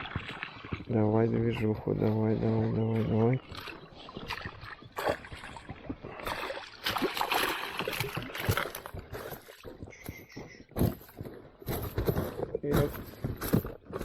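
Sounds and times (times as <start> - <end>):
fish splashing in water: 3.4 - 9.6.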